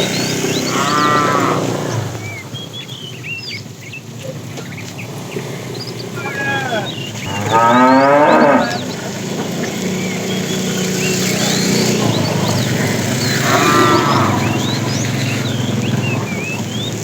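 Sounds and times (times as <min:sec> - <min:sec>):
birds chirping: 0:00.0 - 0:17.0
cow mooing: 0:00.6 - 0:02.2, 0:06.1 - 0:09.1, 0:11.4 - 0:16.2.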